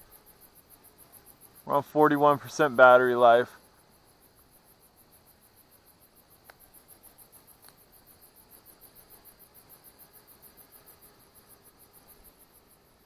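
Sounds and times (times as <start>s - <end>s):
crickets chirping: 0.0s - 13.0s
faint clicks: 6.4s - 7.8s.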